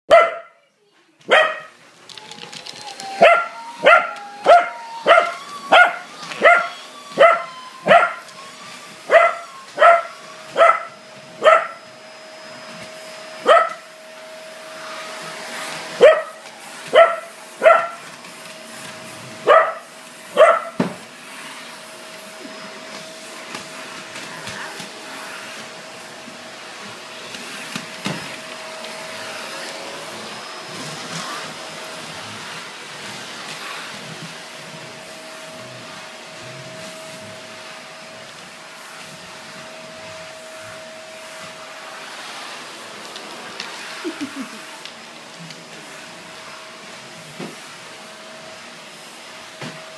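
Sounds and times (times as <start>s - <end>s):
dog barking sharply: 0.1s - 0.6s
vacuum cleaner motor humming: 1.2s - 49.9s.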